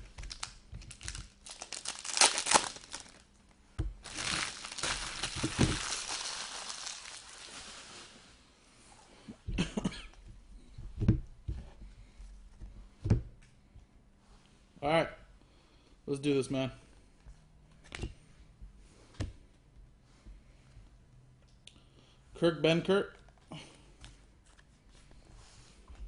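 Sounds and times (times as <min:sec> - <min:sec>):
plastic wrapping crinkling and tearing: 0:00.0 - 0:03.3, 0:04.0 - 0:08.4.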